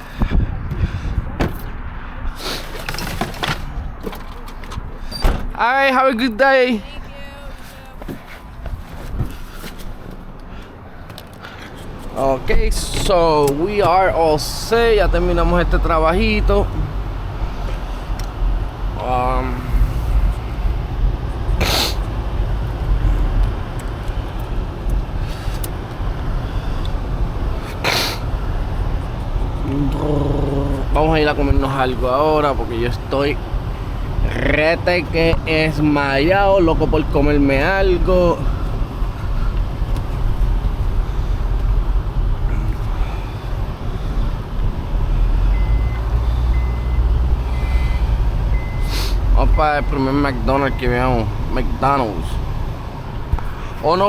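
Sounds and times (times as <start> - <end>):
motor vehicle rumble: 0.0 - 54.0
reversing alarm beeping: 45.5 - 51.1.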